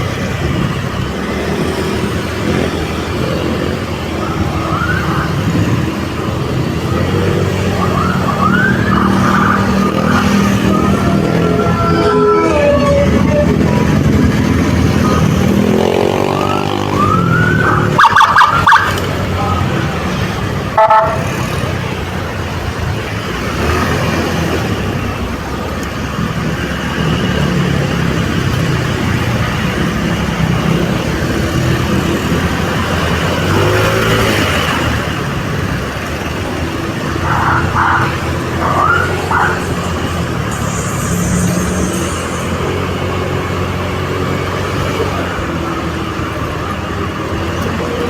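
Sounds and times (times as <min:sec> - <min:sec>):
vehicle engine and road noise: 0:00.0 - 0:48.0
rising siren whoops: 0:04.1 - 0:05.9, 0:07.3 - 0:14.0, 0:15.0 - 0:19.6, 0:37.2 - 0:42.0
loud pulsed horn blasts: 0:20.8 - 0:21.4.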